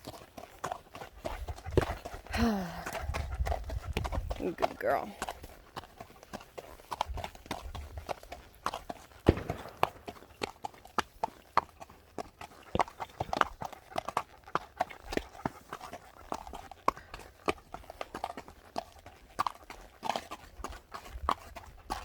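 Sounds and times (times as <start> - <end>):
footsteps on stony ground: 0.0 - 13.5.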